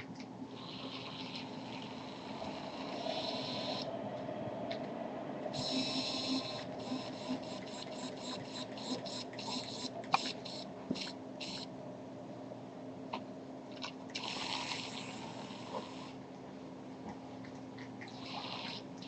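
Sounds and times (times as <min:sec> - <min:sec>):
small electric motor whirring: 0:05.6 - 0:11.7.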